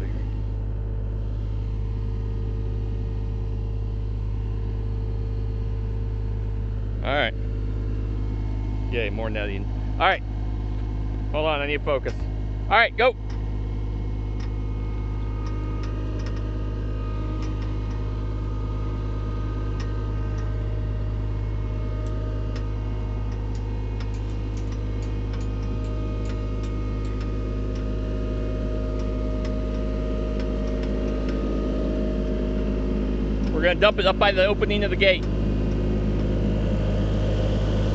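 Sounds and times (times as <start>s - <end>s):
skid steer engine running: 0.0s - 37.9s
light ticking and clicking: 23.3s - 27.9s.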